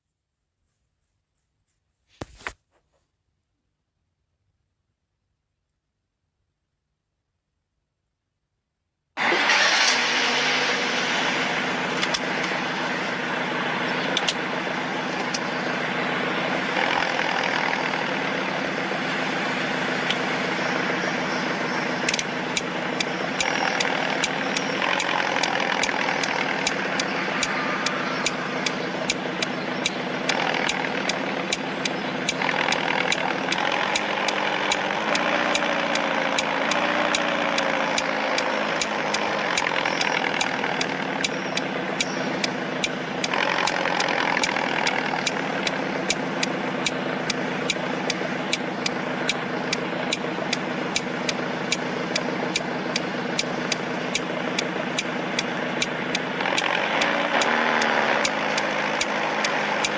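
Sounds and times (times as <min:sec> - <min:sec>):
engine idling: 0:09.2 - 0:59.9
regular ticking: 0:12.0 - 0:59.9.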